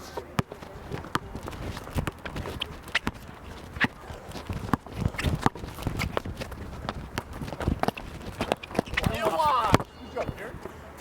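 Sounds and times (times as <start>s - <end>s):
basketball bouncing on court: 0.4s - 9.1s.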